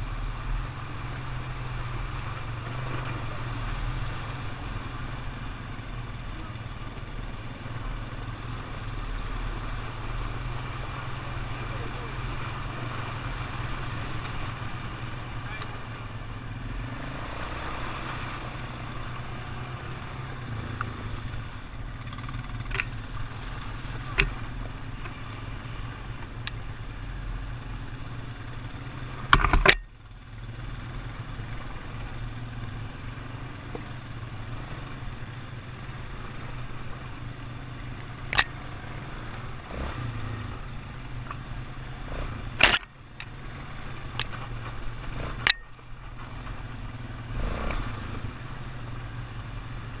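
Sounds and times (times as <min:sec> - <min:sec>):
atv engine running: 0:00.0 - 0:50.0
knocks and rattles of vehicle: 0:18.4 - 0:50.0.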